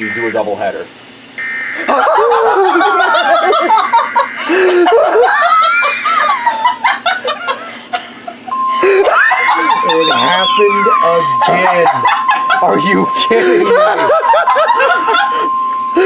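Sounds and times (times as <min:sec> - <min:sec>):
people laughing hard: 0:01.8 - 0:15.5
digital alert header tones: 0:09.5 - 0:14.1.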